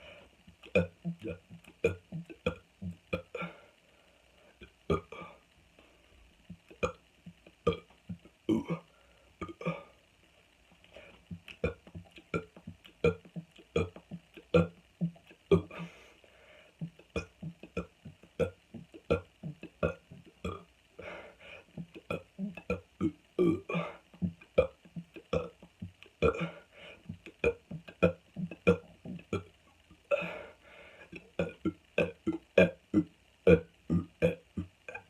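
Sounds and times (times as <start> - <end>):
person burping: 0.6 - 3.6, 4.9 - 5.4, 6.7 - 7.0, 7.6 - 10.0, 11.3 - 16.0, 16.8 - 21.2, 21.8 - 29.5, 30.1 - 35.0.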